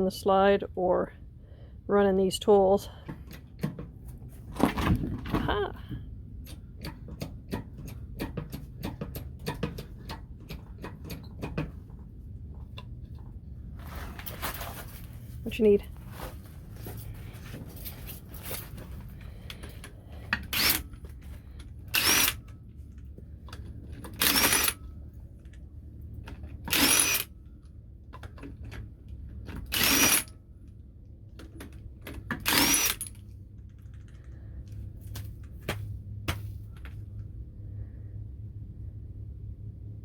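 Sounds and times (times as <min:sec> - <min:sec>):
impact wrench whining: 0:18.6 - 0:22.6, 0:23.5 - 0:25.0, 0:26.6 - 0:27.4, 0:29.6 - 0:30.4, 0:32.2 - 0:33.2.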